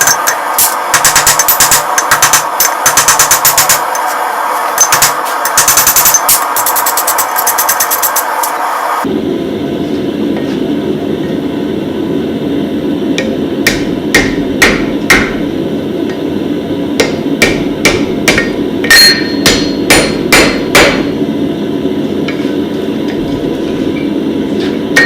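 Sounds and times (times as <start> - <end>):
hammer striking steel on anvil: 0.0 - 4.1, 4.8 - 8.5, 13.2 - 15.5, 17.0 - 21.2.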